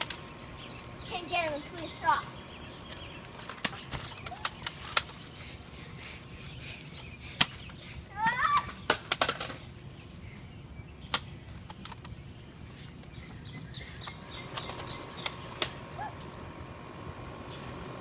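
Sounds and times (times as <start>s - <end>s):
foam dart blasters snapping: 3.3s - 5.2s, 14.5s - 15.8s.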